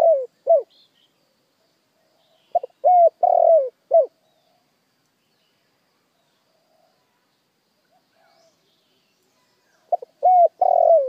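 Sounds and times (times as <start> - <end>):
dove cooing: 0.0 - 0.7, 2.5 - 4.2, 9.9 - 11.0.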